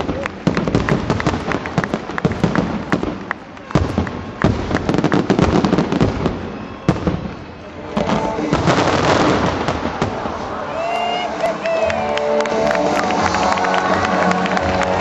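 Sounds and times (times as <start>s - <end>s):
heavy firework bangs: 0.0s - 10.7s
fireworks crackling: 0.0s - 15.0s.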